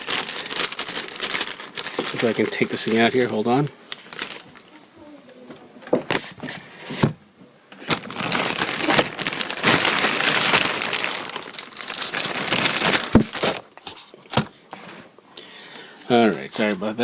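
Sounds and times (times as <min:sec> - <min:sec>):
packaging crinkling and rustling: 0:00.0 - 0:04.8, 0:07.7 - 0:15.1.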